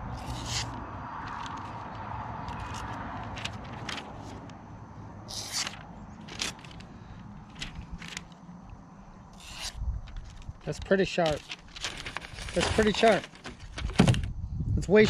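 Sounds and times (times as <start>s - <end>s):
knife rubbing on whetstone: 0.2s - 0.8s
knife scraping on whetstone: 0.2s - 0.8s.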